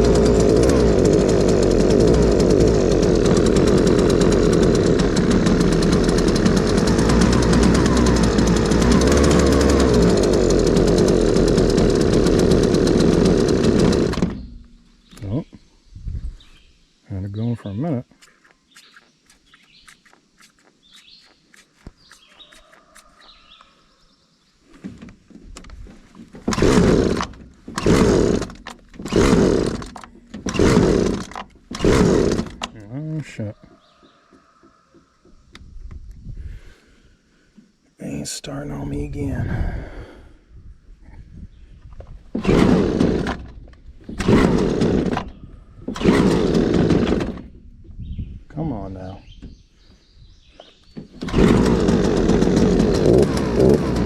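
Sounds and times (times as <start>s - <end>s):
trimmer engine pull-start cranking: 0.0s - 14.8s, 26.4s - 32.9s, 42.3s - 47.7s, 51.1s - 54.0s
birds chirping: 14.3s - 24.7s, 32.8s - 36.0s, 47.9s - 51.3s.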